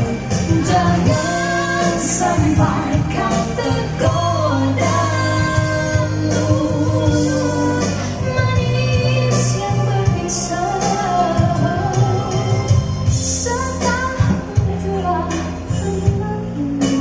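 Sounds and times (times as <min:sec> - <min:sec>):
band accompaniment: 0:00.0 - 0:17.0
person singing: 0:00.0 - 0:17.0
steady bass line: 0:00.0 - 0:17.0.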